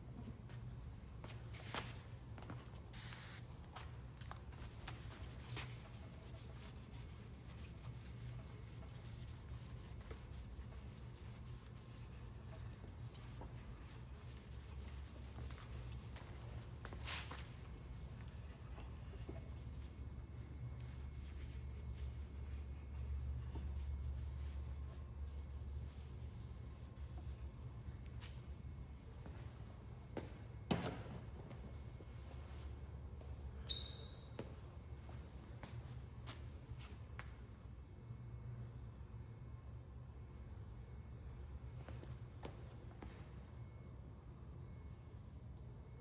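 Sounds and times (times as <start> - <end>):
steady low hum: 0.0 - 46.0
rubbing and scratching handling: 4.5 - 28.4.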